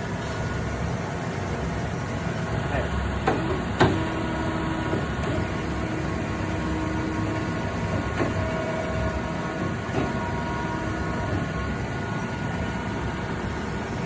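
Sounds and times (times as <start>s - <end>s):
band saw humming: 3.3s - 14.0s.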